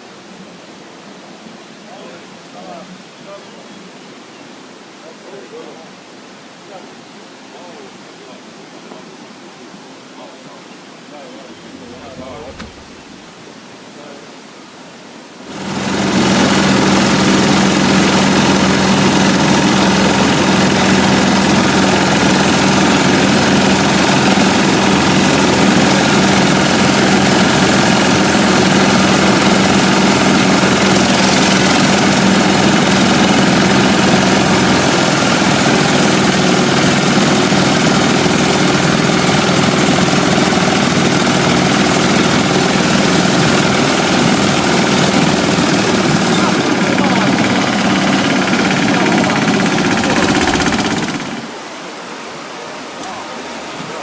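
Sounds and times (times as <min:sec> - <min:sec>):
engine running loud: 0:11.6 - 0:13.2, 0:15.5 - 0:51.6.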